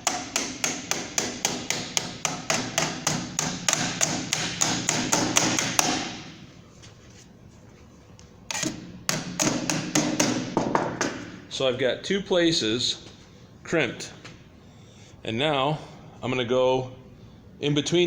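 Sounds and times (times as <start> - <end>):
hammer tapping on sheet metal: 0.0 - 6.4, 9.1 - 11.4.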